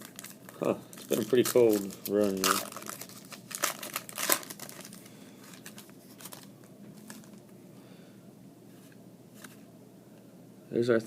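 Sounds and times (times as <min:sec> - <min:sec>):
trading cards rustling and clicking: 0:00.0 - 0:07.4.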